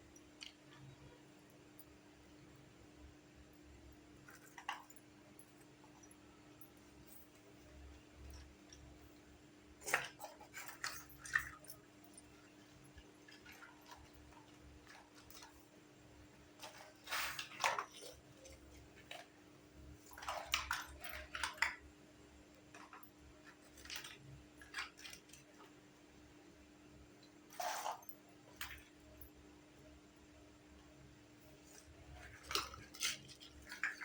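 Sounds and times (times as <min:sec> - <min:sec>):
plastic toys clicking and tapping: 0:20.0 - 0:21.9, 0:22.6 - 0:25.8.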